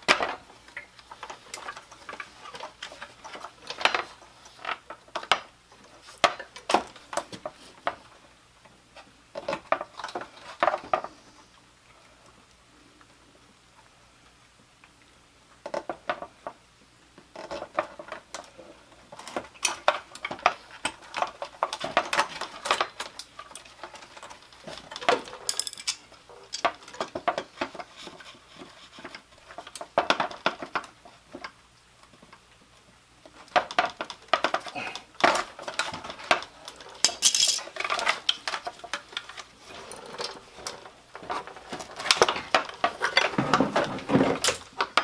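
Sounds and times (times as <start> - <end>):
metal tools and car parts clinking: 24.9 - 27.1, 34.5 - 40.8.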